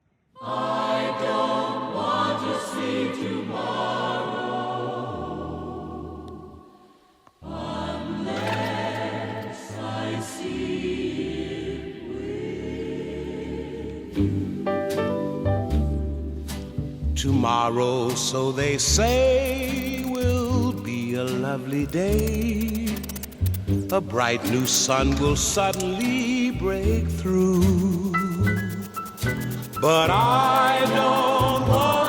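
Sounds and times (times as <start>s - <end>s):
choir singing held chords: 0.4s - 14.8s, 29.8s - 32.0s.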